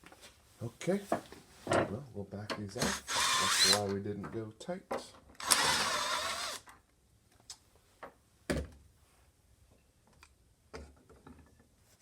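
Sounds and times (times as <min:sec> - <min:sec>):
cordless drill whining: 0:02.8 - 0:03.8, 0:05.4 - 0:06.7.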